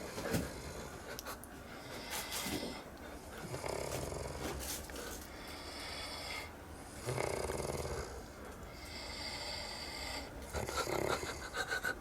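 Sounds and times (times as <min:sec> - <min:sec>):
person snoring: 0:05.6 - 0:08.2.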